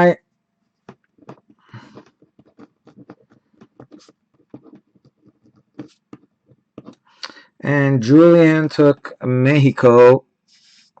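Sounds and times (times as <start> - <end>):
scratchy rustles: 0.8 - 7.1.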